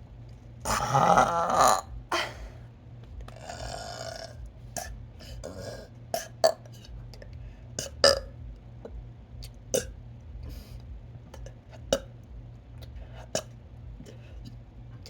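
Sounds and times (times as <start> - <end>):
person burping: 0.7 - 2.6, 3.4 - 6.7, 7.8 - 8.3, 9.7 - 9.9.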